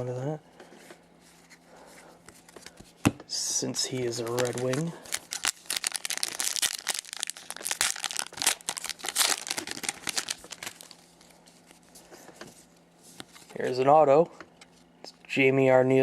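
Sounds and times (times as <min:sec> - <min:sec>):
card pack wrapper tearing and crinkling: 0:03.9 - 0:11.7.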